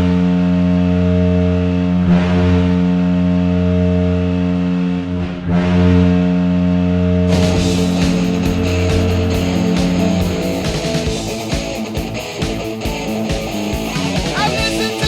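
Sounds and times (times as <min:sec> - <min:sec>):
goal horn blast: 0:07.3 - 0:11.3.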